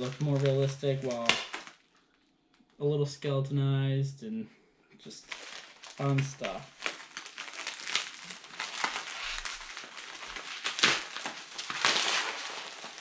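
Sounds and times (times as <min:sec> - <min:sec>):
packaging crinkling: 0:00.0 - 0:02.1, 0:05.1 - 0:13.0.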